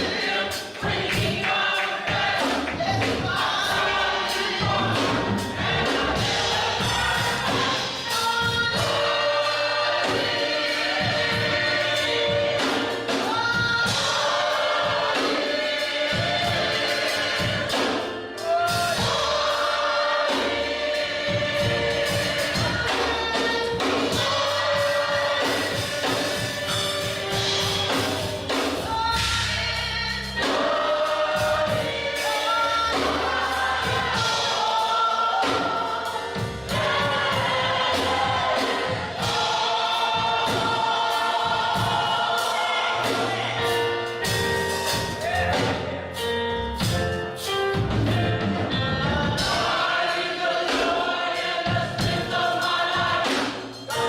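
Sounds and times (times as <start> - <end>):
gospel choir singing: 0.0 - 54.0
musical backing: 0.0 - 54.0.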